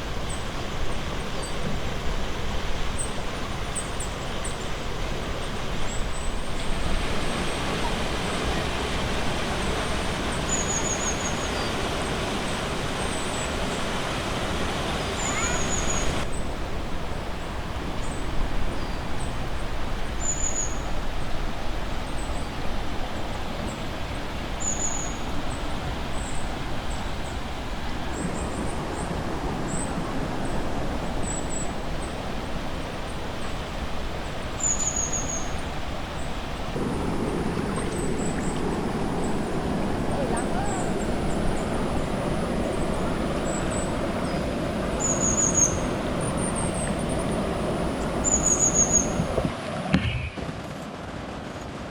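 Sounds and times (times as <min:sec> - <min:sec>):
river water rushing over rapids: 0:00.0 - 0:51.9
bird high falling call: 0:14.7 - 0:16.2.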